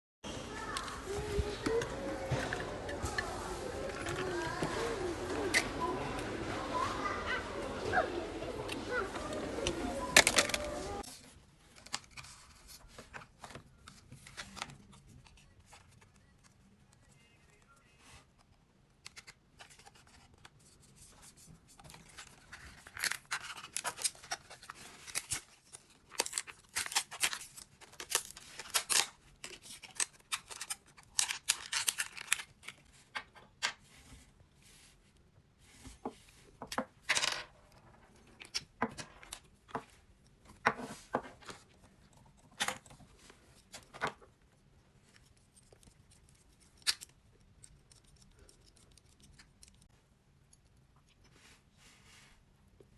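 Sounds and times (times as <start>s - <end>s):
packaging rustling and tearing: 21.8s - 33.0s.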